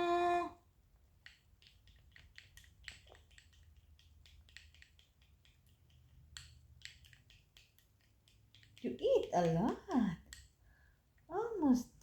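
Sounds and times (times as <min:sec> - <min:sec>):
baby eating wet smacks: 0:01.2 - 0:10.4.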